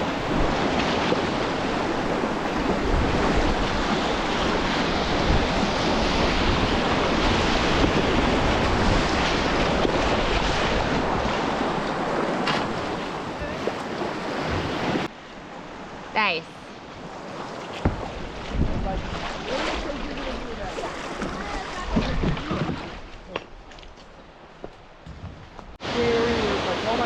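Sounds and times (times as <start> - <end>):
wind buffeting microphone: 0.0 - 15.1, 16.9 - 23.7
whitewater rushing: 25.8 - 27.0.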